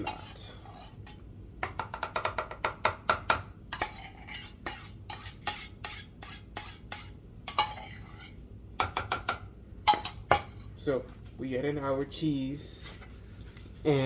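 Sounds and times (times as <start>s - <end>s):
utensil scraping cookware: 0.0s - 1.2s, 3.7s - 8.4s, 9.9s - 10.8s.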